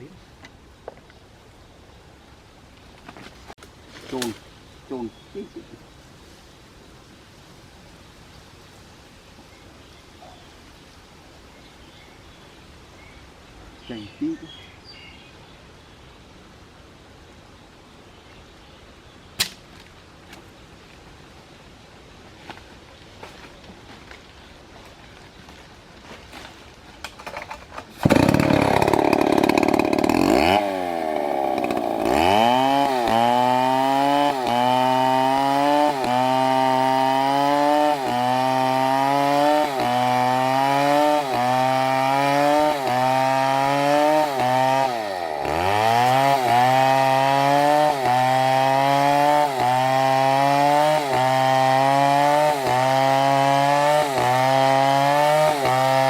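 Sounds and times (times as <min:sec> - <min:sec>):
chainsaw cutting wood: 0:27.2 - 0:56.0.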